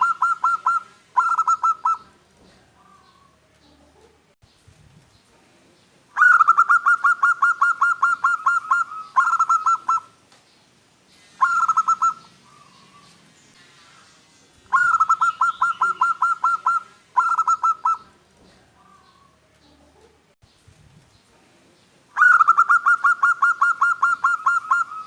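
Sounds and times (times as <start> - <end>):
dove cooing: 0.0 - 4.2, 6.2 - 10.2, 11.4 - 13.2, 14.7 - 18.2, 22.2 - 25.0.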